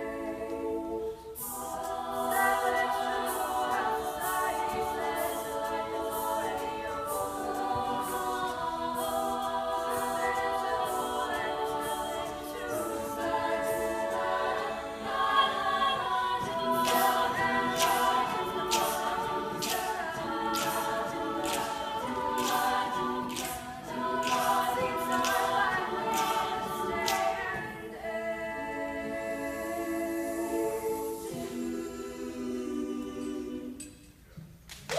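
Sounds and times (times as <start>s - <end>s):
voices singing a cappella: 0.0s - 34.5s
sharp clicks keeping a beat: 1.4s - 27.8s.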